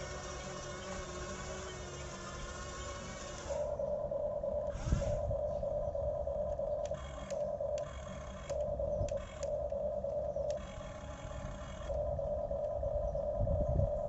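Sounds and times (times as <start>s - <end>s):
electric motors whining: 0.0s - 4.0s, 4.6s - 5.7s, 6.5s - 12.8s
sharp clicks: 6.5s - 12.0s.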